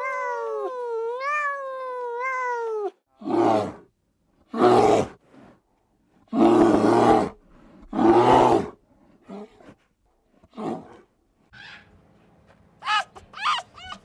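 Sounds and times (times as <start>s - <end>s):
animal calling loudly: 12.8s - 14.0s.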